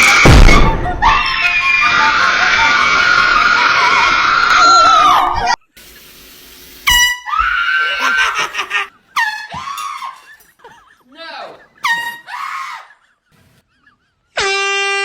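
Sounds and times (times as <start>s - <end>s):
air horn honks: 6.8s - 7.3s, 14.4s - 15.0s.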